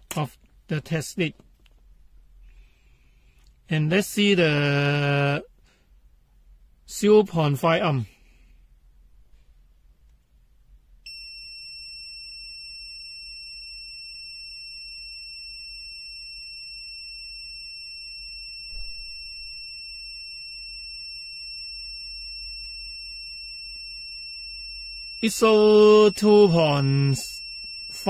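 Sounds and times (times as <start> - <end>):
continuous high beep: 11.1 - 28.0.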